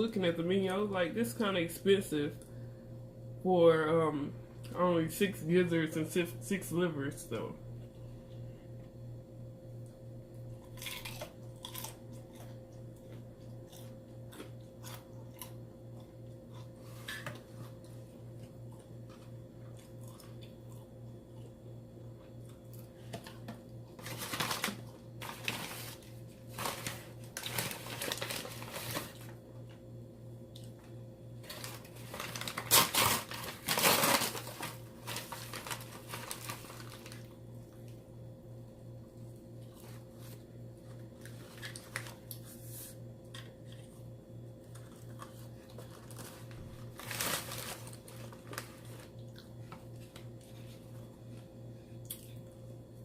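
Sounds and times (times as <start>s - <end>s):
chewing: 10.6s - 16.8s, 18.7s - 21.5s.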